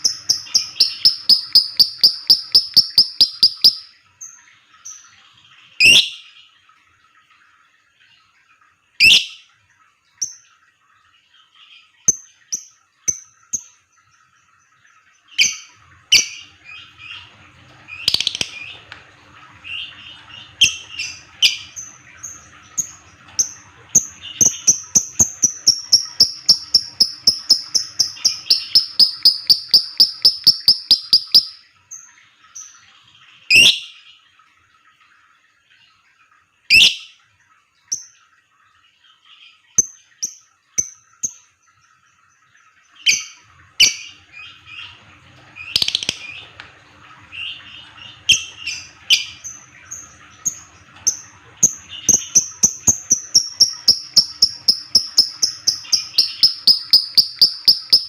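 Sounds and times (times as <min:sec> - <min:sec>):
bird clicking chirps: 0:00.0 - 0:03.9, 0:18.1 - 0:18.6, 0:25.2 - 0:31.6, 0:53.2 - 0:58.0
shrill bird chirps: 0:00.0 - 0:04.0, 0:05.8 - 0:06.3, 0:17.9 - 0:18.8, 0:24.2 - 0:31.7, 0:45.6 - 0:46.4, 0:51.1 - 0:58.0.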